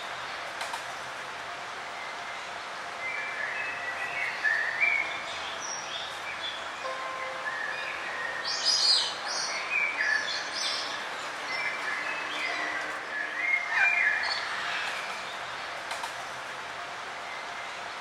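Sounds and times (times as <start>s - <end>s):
steady background hiss: 0.0s - 18.0s
forest birds chirping and singing: 1.8s - 16.0s.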